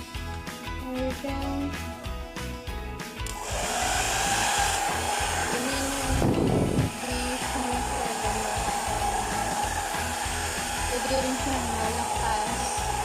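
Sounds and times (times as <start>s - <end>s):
background music: 0.0s - 13.0s
hair dryer running: 3.2s - 13.0s.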